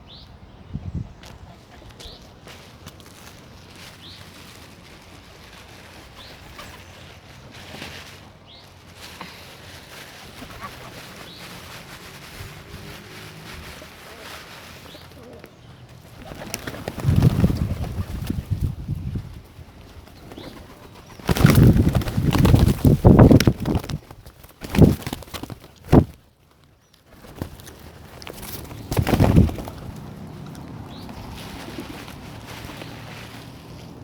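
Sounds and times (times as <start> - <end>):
wings flapping: 5.7 - 7.9, 9.8 - 26.2, 27.1 - 33.8
birds calling: 14.0 - 26.2, 26.8 - 34.0.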